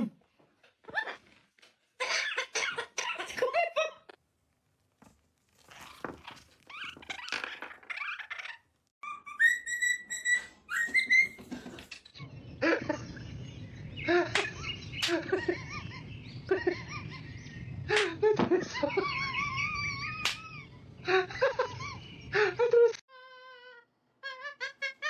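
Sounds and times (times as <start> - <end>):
parrot pitched calls: 6.7 - 11.4, 23.3 - 25.0
parrot whistling: 9.0 - 11.4.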